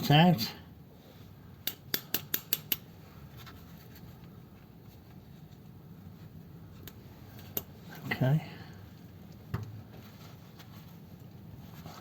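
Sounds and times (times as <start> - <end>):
hand tools clicking on nuts: 1.6 - 2.9.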